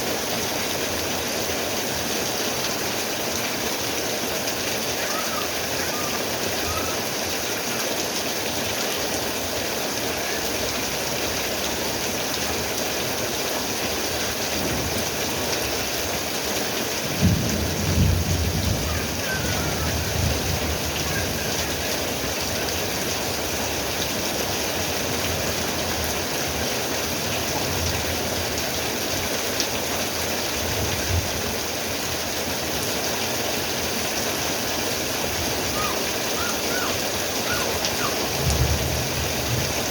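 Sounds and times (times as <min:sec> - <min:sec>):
steady rain falling: 0:00.0 - 0:39.9
thunder rumbling: 0:14.5 - 0:15.2, 0:17.0 - 0:22.4, 0:38.2 - 0:39.9.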